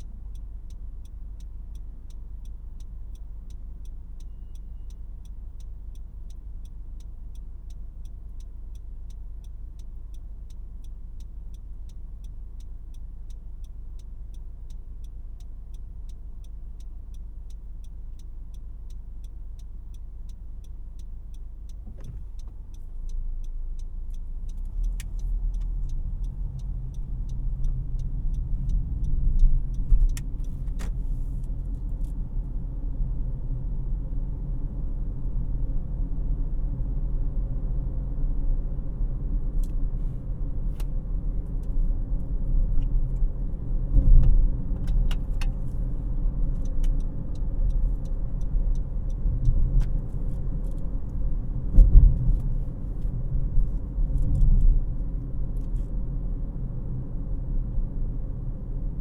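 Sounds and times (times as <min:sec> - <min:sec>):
car engine humming: 0:00.0 - 0:59.0
road rumble: 0:00.0 - 0:59.0
turn signal clicking: 0:00.0 - 0:59.0.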